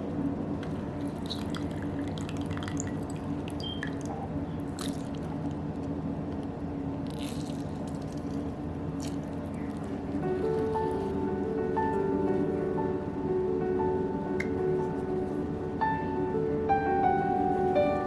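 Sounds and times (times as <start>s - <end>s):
faint steady hum: 0.0s - 18.0s
liquid dripping: 0.6s - 5.4s.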